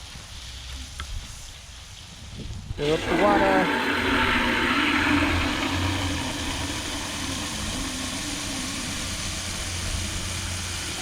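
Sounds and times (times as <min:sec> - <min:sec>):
low mechanical hum: 0:02.8 - 0:11.0.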